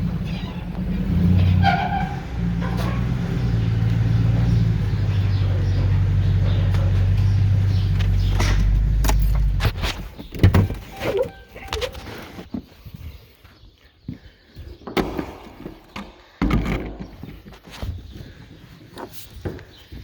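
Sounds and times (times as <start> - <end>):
truck engine running under load: 0.0 - 11.6
sharp knocks and clunks: 5.8 - 12.0, 14.8 - 17.5.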